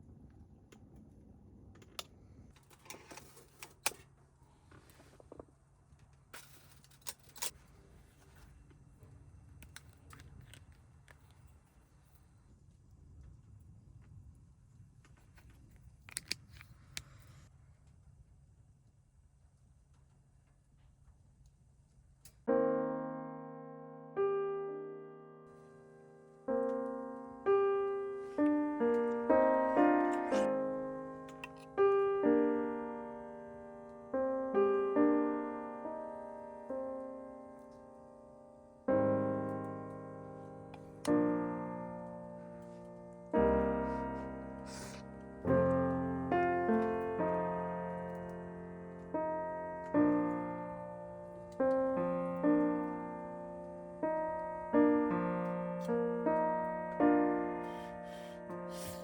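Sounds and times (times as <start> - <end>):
slow piano music: 22.4 - 59.0.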